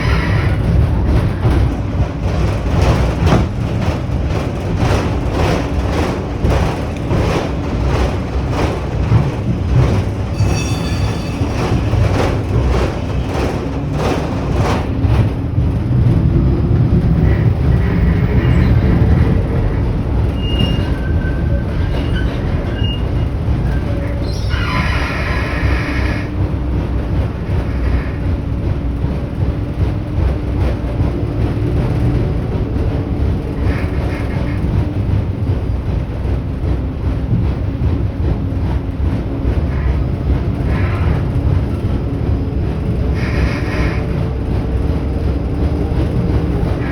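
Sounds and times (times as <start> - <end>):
high wheel squeal: 0.0 - 1.3, 10.2 - 12.0, 17.2 - 26.4, 39.7 - 41.4, 42.9 - 44.5
train wheels running on track: 0.0 - 46.9.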